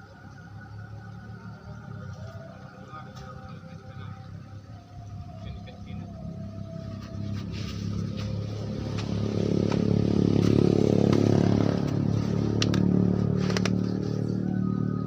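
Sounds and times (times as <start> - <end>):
small engine running: 7.4 - 15.0.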